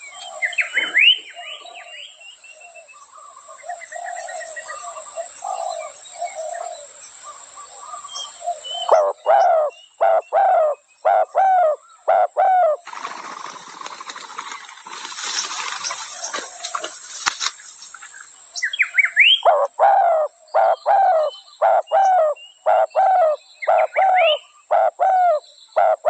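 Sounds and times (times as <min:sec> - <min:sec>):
dove cooing: 0:03.6 - 0:12.8, 0:19.4 - 0:26.0.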